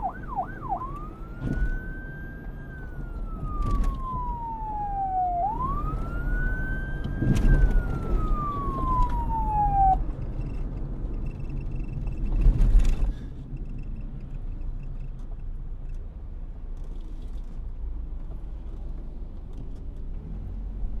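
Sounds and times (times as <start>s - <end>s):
police siren wail: 0.0s - 10.2s
road traffic rumble: 0.0s - 21.0s.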